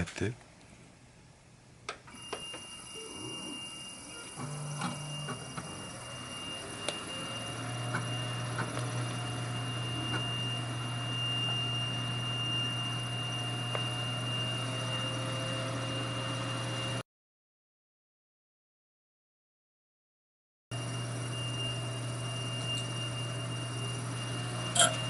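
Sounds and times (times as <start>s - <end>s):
high-pitched computer whine: 2.1s - 17.0s, 20.7s - 25.0s.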